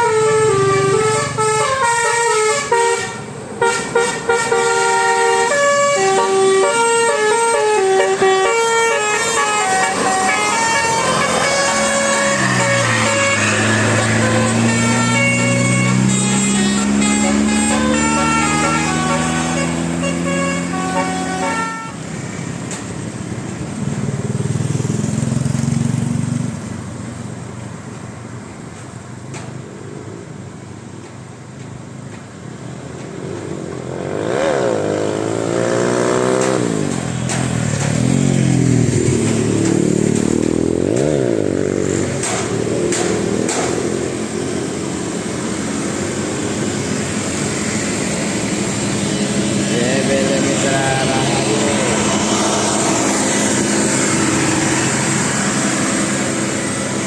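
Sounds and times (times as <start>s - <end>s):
bus musical horn melody: 0.0s - 22.5s, 45.5s - 57.0s
vehicle engines running: 0.0s - 57.0s
sliding pitched sounds: 5.4s - 21.7s, 36.1s - 57.0s.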